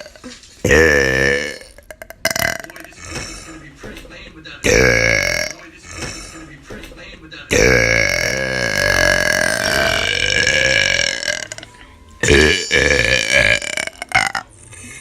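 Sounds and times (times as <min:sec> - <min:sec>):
woman burping: 0:00.0 - 0:03.2, 0:04.6 - 0:06.1, 0:07.5 - 0:14.5.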